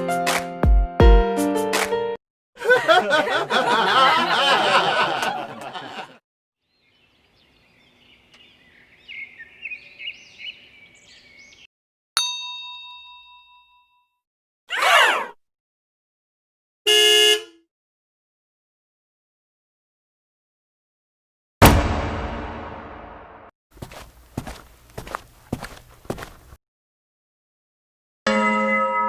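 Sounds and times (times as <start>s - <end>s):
bell-like ding: 12.2s - 14.2s.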